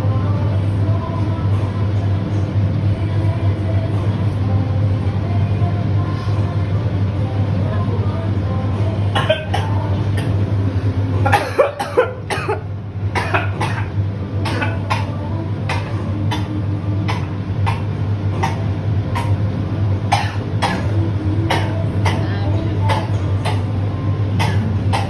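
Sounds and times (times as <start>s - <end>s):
steady low hum: 0.0s - 25.0s
person coughing stifled: 9.2s - 10.4s, 11.2s - 12.6s, 13.2s - 16.5s, 17.1s - 19.4s, 20.1s - 23.7s, 24.4s - 25.0s.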